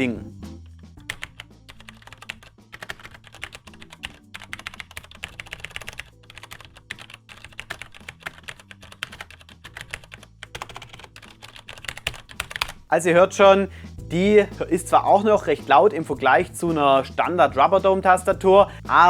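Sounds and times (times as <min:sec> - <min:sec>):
fast typing on mechanical keyboard: 0:01.1 - 0:12.8.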